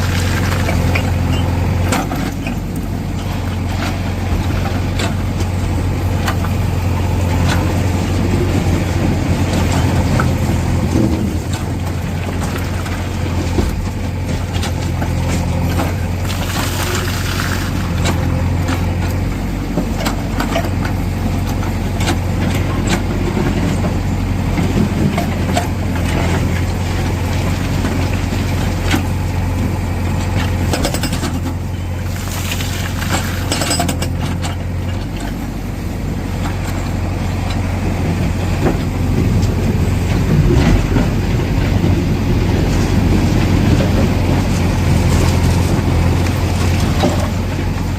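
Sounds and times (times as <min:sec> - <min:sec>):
diesel engine running: 0:00.0 - 0:47.9
sharp knocks and metallic clatter: 0:30.4 - 0:31.6, 0:33.0 - 0:35.4.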